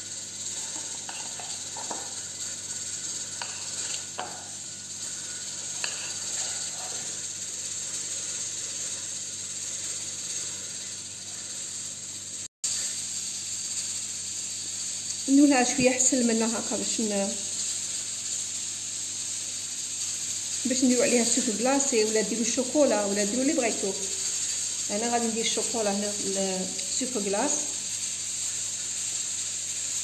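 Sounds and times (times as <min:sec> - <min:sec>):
steady hiss: 0:00.0 - 0:30.0
utensil tapping and scraping cake: 0:00.6 - 0:02.2, 0:03.4 - 0:04.6, 0:05.7 - 0:07.2.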